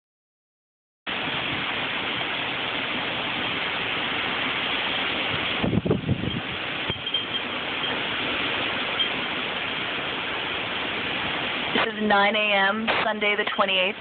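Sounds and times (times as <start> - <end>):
heavy rain: 1.1 - 14.0
storm wind: 1.1 - 14.0
wind buffeting microphone: 1.2 - 12.0.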